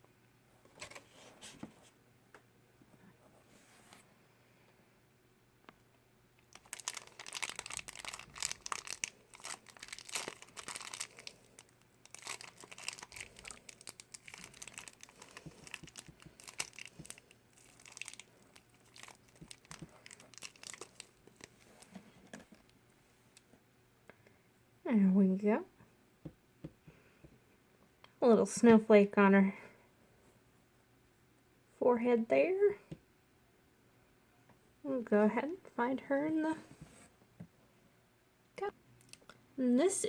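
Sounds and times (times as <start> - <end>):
plastic wrapper crinkling and tearing: 6.5 - 22.6.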